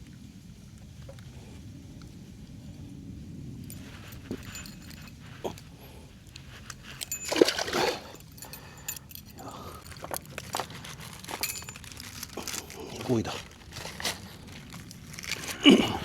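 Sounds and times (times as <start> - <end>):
water splashing: 7.1 - 8.2.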